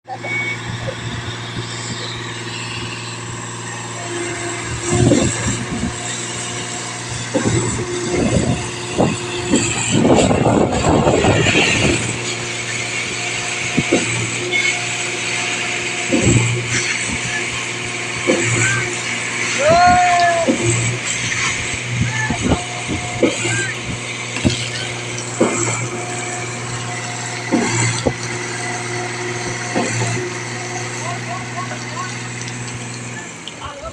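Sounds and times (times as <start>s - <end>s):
concrete pump engine hum: 0.0s - 33.9s
knocks and clattering in pipe: 4.2s - 33.2s
sharp knocks in pipeline: 24.3s - 26.2s, 27.2s - 28.4s.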